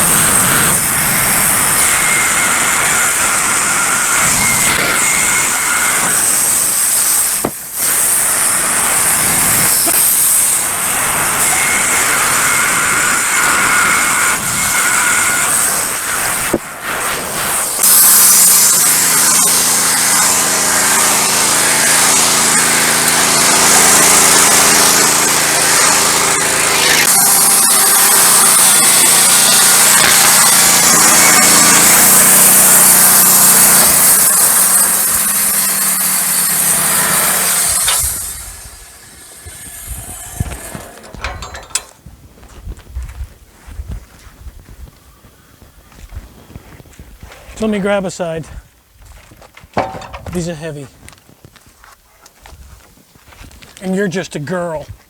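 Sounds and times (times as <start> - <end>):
band sawmill cutting log: 0.0 - 42.0, 49.8 - 50.8
machine hum: 34.5 - 42.0
scattered knocks: 49.8 - 50.4.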